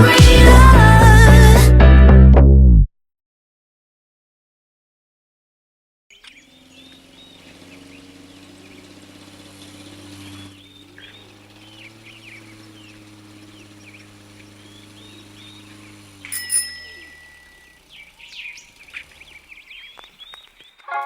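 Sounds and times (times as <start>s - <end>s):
birds chirping: 6.1s - 21.0s.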